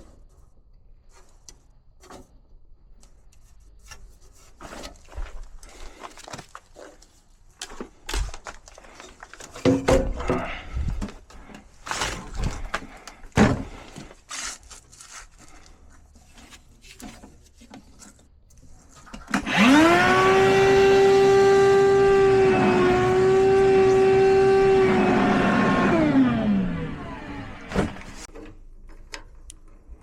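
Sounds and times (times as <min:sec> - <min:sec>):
furnace motor whine: 0:19.4 - 0:28.3.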